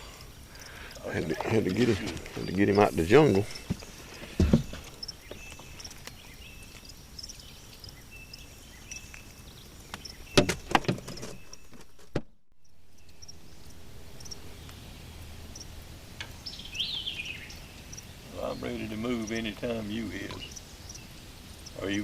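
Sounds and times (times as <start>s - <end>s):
bird chirps: 0.0s - 12.0s, 12.6s - 22.0s
knocks: 4.4s - 4.9s
low steady hum: 12.5s - 22.0s.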